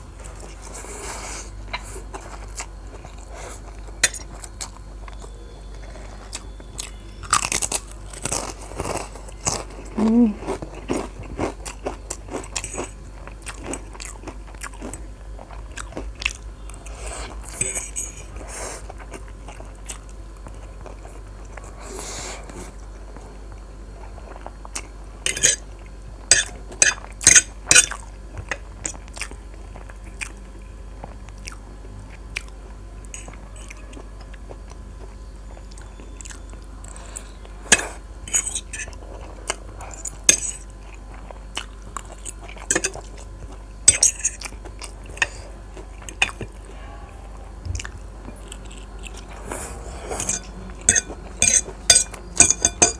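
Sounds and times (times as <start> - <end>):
chewing and biting food: 0.0 - 46.8, 47.5 - 52.9
loud sharp crunches: 5.9 - 9.7.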